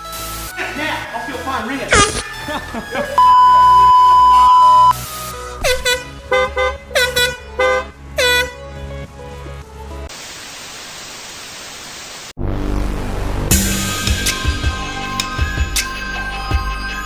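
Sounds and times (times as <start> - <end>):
air horn blasts: 5.6 - 8.6
static-like hiss: 10.1 - 12.4.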